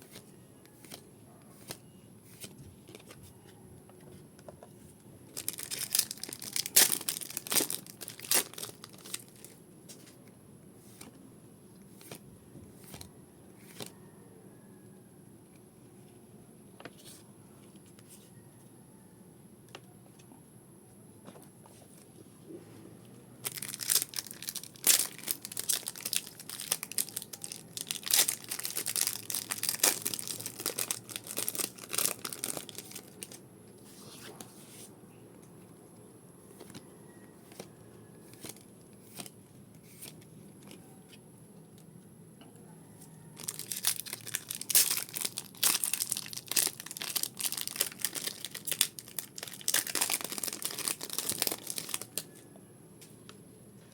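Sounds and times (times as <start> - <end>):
foil wrappers tearing and crinkling: 5.3 - 9.6, 23.4 - 33.4, 43.4 - 52.3.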